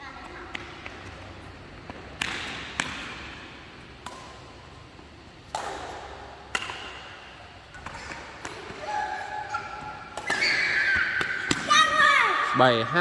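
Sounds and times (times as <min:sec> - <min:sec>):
racket hitting shuttlecock: 0:01.9 - 0:11.7.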